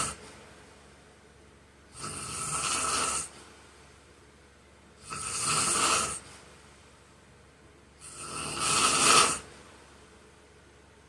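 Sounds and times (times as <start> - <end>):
man snoring loudly: 0.0 - 0.2, 1.9 - 3.3, 5.0 - 6.2, 8.0 - 9.5.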